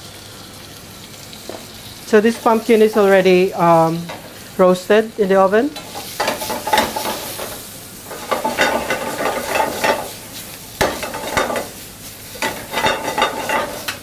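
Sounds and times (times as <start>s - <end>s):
food sizzling in a pan: 0.0s - 14.0s
utensil stirring and scraping: 5.8s - 14.0s.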